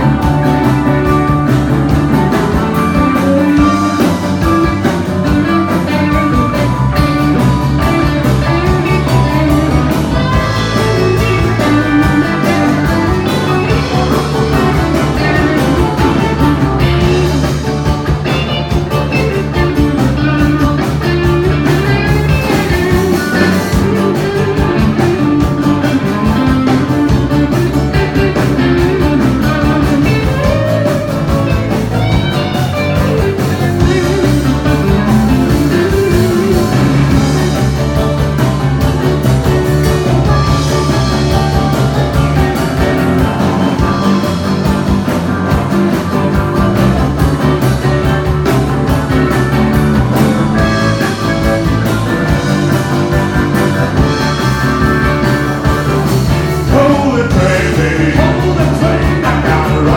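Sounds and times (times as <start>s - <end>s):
blues-rock band playing: 0.0s - 59.9s
lead guitar: 0.0s - 59.9s.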